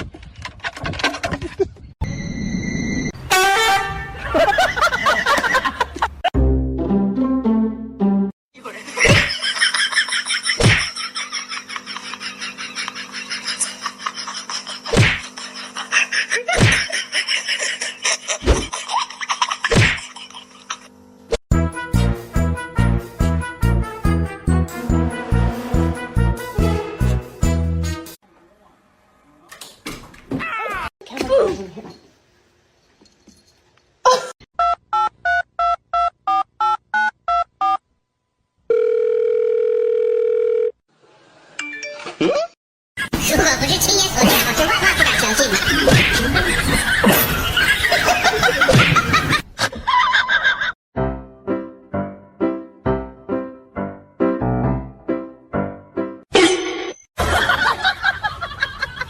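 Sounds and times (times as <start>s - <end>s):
telephone ringback tone: 38.7s - 40.8s.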